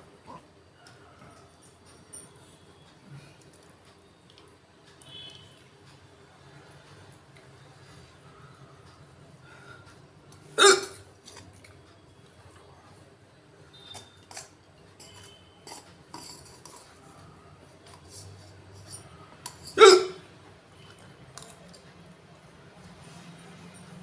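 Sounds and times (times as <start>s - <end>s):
faint clicks and clinks: 0.8s - 6.1s, 13.7s - 19.8s
person hiccuping: 10.6s - 11.0s, 19.8s - 20.2s.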